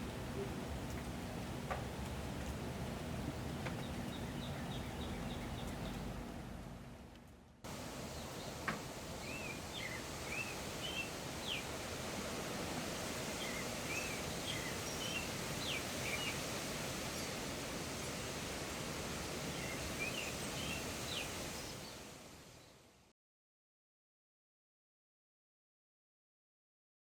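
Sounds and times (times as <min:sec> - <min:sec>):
outdoor background noise: 0:00.0 - 0:23.1
songbird chirping: 0:03.4 - 0:06.3, 0:08.0 - 0:11.9, 0:12.9 - 0:18.4, 0:19.4 - 0:22.9.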